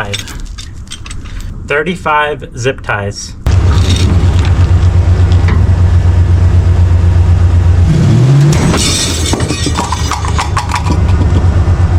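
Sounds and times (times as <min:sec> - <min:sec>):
pickup engine idling and revving: 0:03.5 - 0:11.9.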